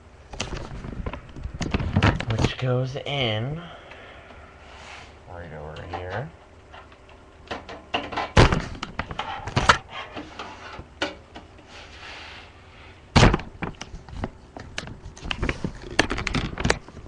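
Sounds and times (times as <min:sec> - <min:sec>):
brief scrape: 0:11.7 - 0:12.9.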